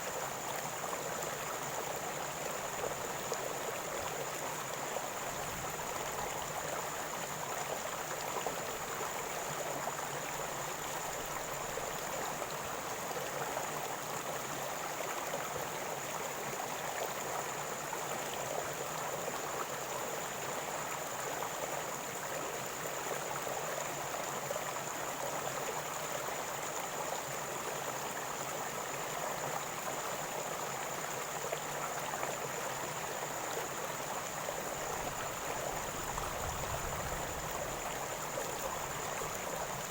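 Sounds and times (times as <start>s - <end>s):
river water flowing over stones: 29.3s - 39.9s.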